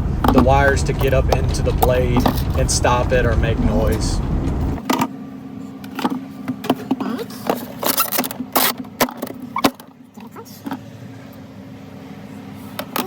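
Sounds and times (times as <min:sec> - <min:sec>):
low electrical hum: 0:00.0 - 0:04.8
low rumble: 0:00.0 - 0:04.8.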